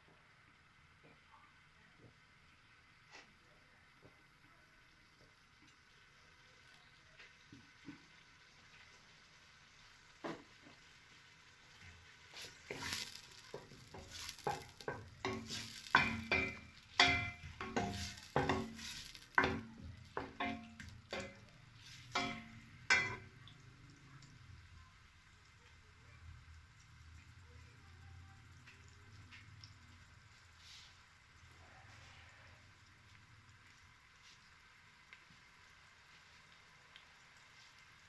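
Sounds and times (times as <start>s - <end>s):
onions frying in oil: 0.0s - 38.0s
spoon knocking metal pot: 12.7s - 23.4s.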